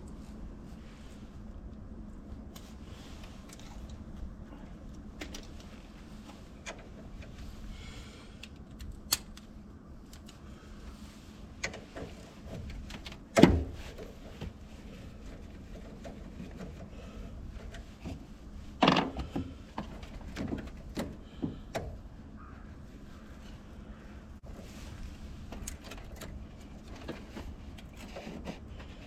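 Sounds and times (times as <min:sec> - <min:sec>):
tools and parts clicking: 0:08.4 - 0:09.5.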